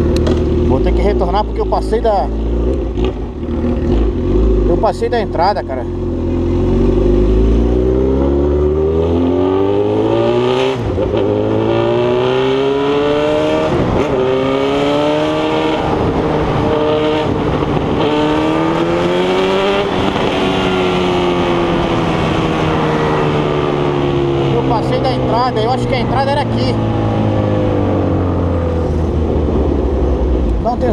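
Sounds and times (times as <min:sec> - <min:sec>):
motorcycle engine accelerating: 0:00.0 - 0:30.9.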